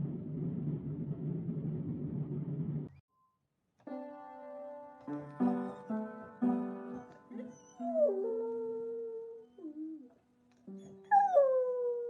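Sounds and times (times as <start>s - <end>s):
piano chords: 3.9s - 9.9s
dog howling: 6.9s - 10.1s, 10.8s - 12.0s.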